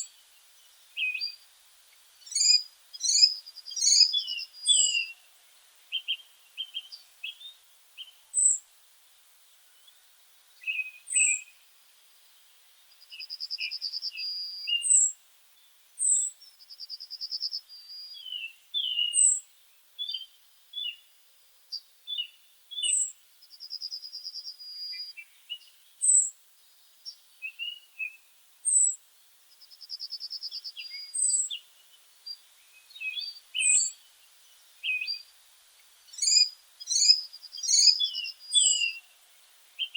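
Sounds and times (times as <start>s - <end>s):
short bird chirps: 2.2s - 5.2s, 16.0s - 19.4s, 29.6s - 34.1s, 34.8s - 35.3s, 36.1s - 39.1s
rapid bird trills: 2.3s - 5.2s, 36.1s - 39.1s.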